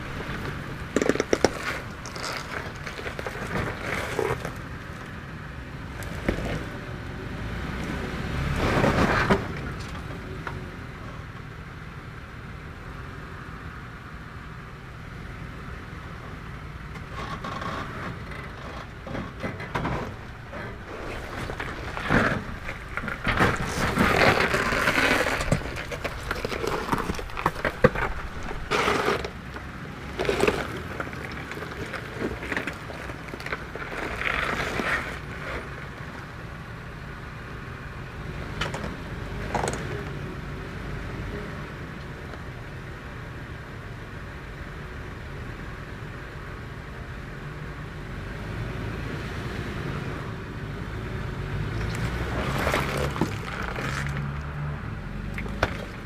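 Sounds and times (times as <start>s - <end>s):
rocks crunching under tyres: 0.0s - 10.8s, 16.3s - 40.3s, 50.9s - 56.0s
engine running at low speed: 0.0s - 56.0s.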